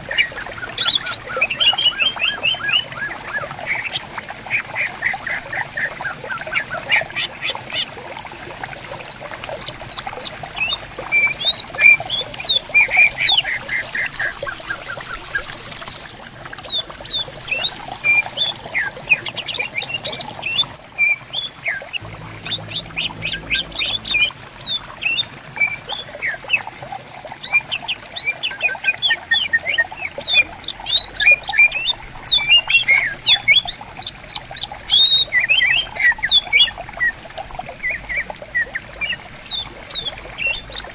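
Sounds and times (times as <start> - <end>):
stream flowing: 0.0 - 40.9
birds chirping and whistling: 0.1 - 3.9, 10.6 - 14.1, 17.1 - 26.6, 28.3 - 33.7, 34.9 - 36.7.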